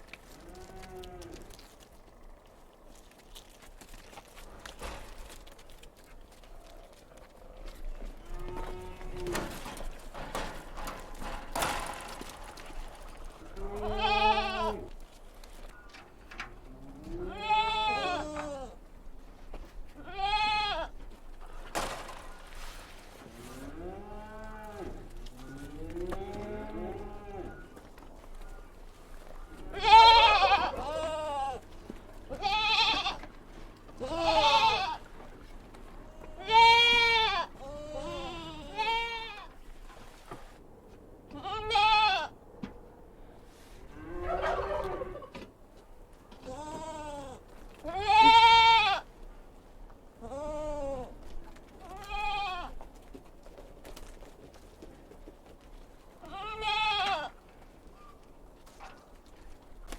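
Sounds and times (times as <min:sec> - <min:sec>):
goats bleating: 0:13.4 - 0:15.0, 0:17.0 - 0:18.8, 0:19.9 - 0:21.0, 0:29.6 - 0:35.1, 0:36.1 - 0:39.6, 0:41.3 - 0:42.3, 0:46.4 - 0:49.1, 0:50.2 - 0:52.8, 0:56.2 - 0:57.4.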